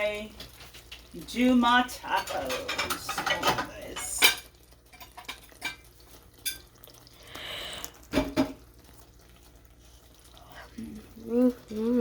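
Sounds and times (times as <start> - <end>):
dishes clattering: 2.0 - 6.7, 8.1 - 8.6.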